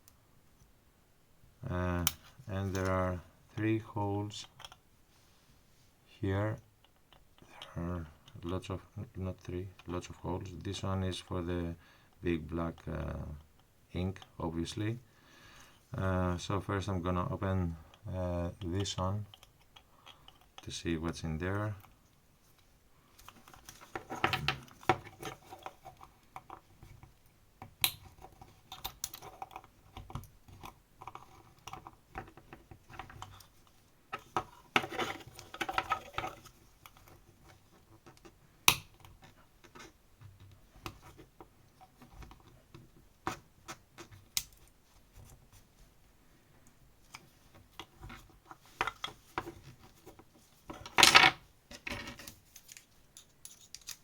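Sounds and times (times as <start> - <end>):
tool clicking and scraping on plastic: 23.2 - 44.6.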